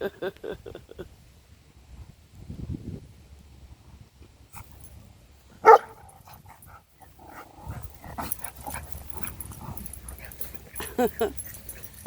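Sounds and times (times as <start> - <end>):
dog barking: 5.6 - 6.0
soft low dog sounds: 5.6 - 12.0.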